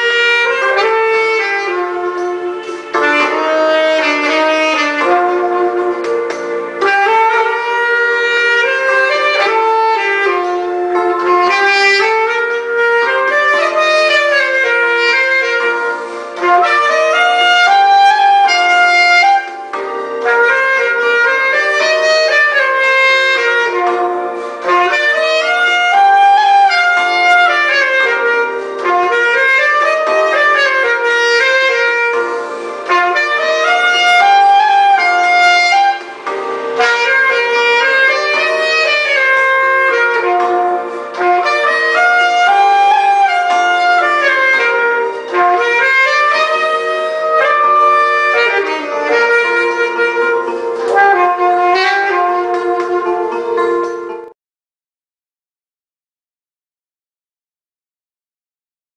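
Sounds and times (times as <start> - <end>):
backing accompaniment: 0.0 - 54.3
saxophone melody: 0.0 - 54.4.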